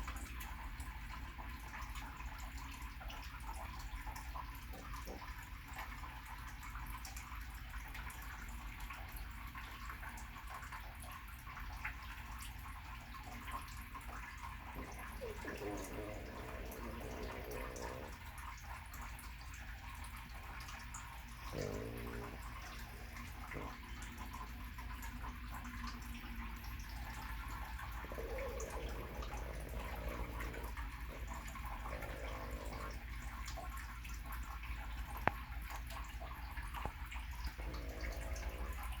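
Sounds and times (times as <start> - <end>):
low steady hum: 11.6 - 39.0
person snoring: 14.8 - 18.2, 21.4 - 24.0, 28.0 - 33.0, 37.6 - 39.0.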